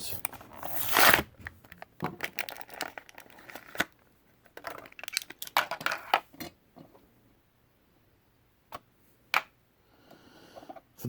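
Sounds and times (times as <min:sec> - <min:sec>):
packaging crinkling and tearing: 0:00.1 - 0:04.0, 0:04.6 - 0:05.6.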